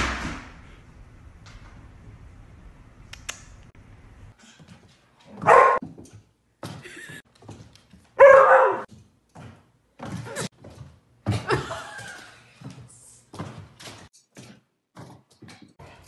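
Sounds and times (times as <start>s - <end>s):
dog barking: 5.4s - 5.8s, 8.2s - 8.9s.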